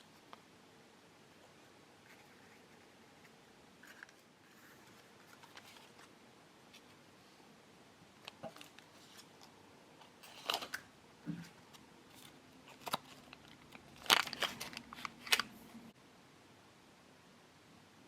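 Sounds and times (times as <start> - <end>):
plastic packaging crinkling: 10.1 - 10.9, 12.1 - 15.5.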